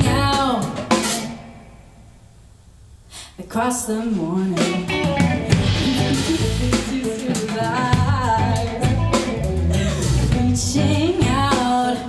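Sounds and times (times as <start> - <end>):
pop song with guitar and drums: 0.0 - 1.5, 3.5 - 12.0
person singing: 3.5 - 12.0.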